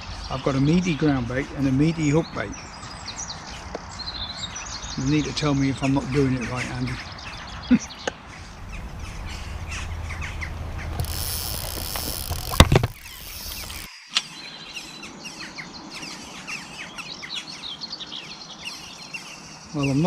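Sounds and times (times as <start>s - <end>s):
wind buffeting microphone: 0.0s - 13.9s
small birds chirping: 0.0s - 20.0s.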